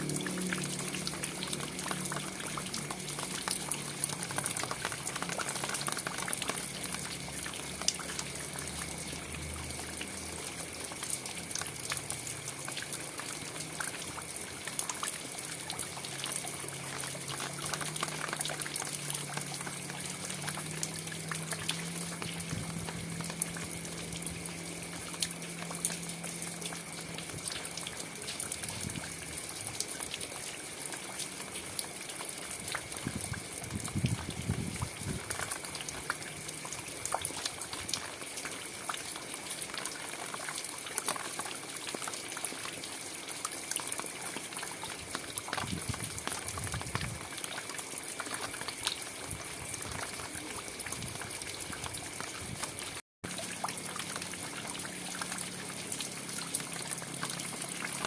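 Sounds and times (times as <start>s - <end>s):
raindrops hitting close by: 0.0s - 58.0s
steady rain hiss: 0.0s - 58.0s.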